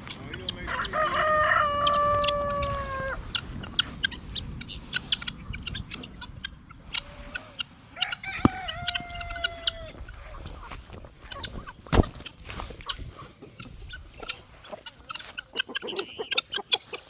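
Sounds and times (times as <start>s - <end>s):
chickens clucking: 0.0s - 17.0s
roosters crowing: 0.3s - 4.3s, 6.9s - 10.2s.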